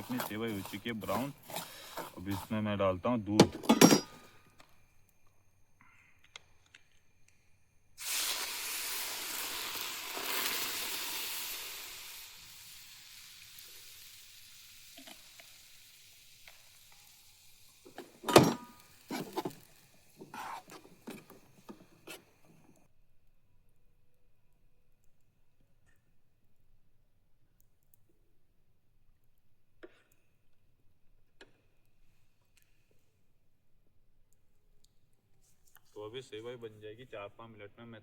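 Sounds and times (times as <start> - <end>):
milk sizzling in hot pan: 0.0 - 2.7, 7.0 - 22.9.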